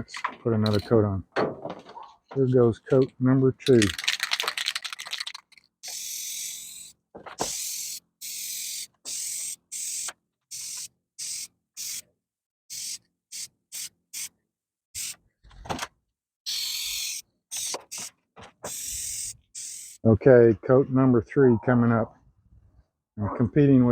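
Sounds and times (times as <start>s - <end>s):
spray can hissing: 3.8s - 12.0s, 12.7s - 14.3s, 15.0s - 15.2s, 16.5s - 18.1s, 18.7s - 20.0s.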